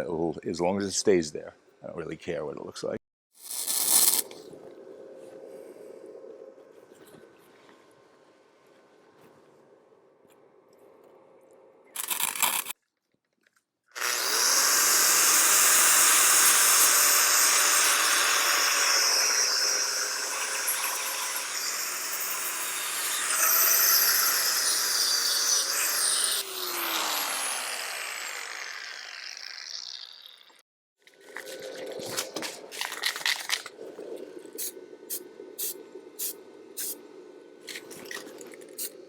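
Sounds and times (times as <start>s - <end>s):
angle grinder on steel: 14.0s - 30.6s.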